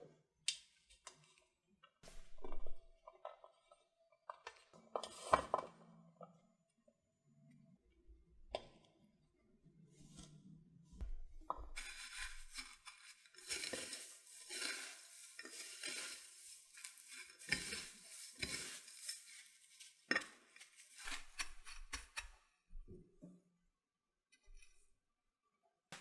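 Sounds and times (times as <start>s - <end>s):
utensils scraping and clattering: 11.8s - 22.3s.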